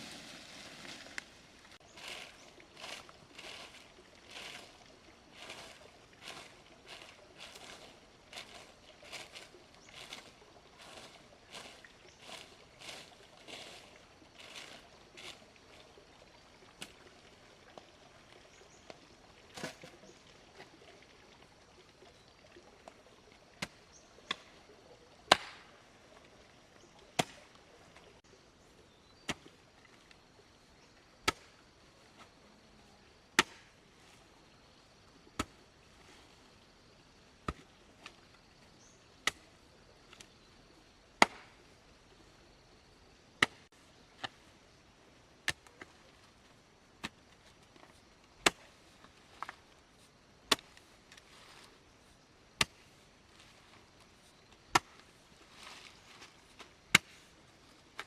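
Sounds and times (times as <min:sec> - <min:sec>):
hand tool striking wood: 0:25.3 - 0:25.7, 0:33.4 - 0:33.6, 0:41.2 - 0:41.5, 0:54.7 - 0:55.0, 0:56.9 - 0:57.1.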